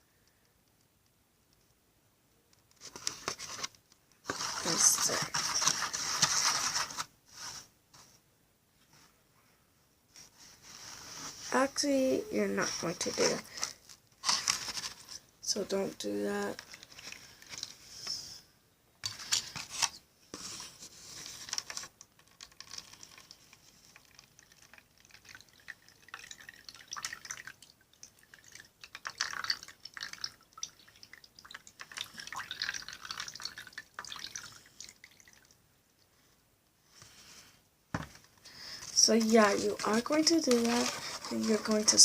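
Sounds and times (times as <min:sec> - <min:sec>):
slime stirred in a bowl: 0:04.3 - 0:07.6, 0:21.4 - 0:35.4, 0:38.7 - 0:42.0.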